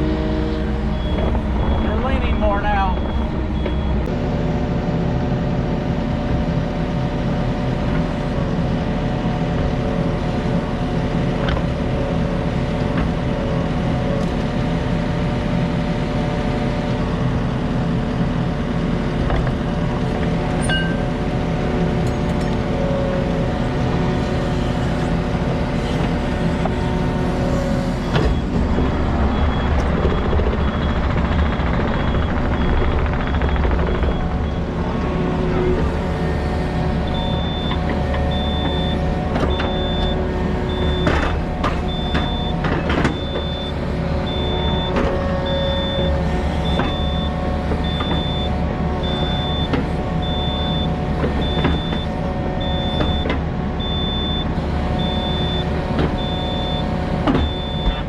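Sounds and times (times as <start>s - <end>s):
diesel engine running: 0.0s - 58.0s
backup alarm beeping: 0.9s - 4.1s, 28.2s - 34.7s, 37.1s - 41.3s, 41.9s - 58.0s.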